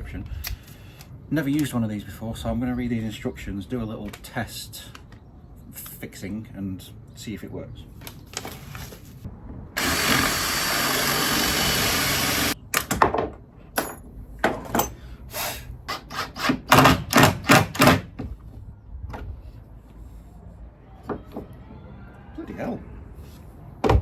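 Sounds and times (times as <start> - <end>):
drill boring: 9.8 - 12.6.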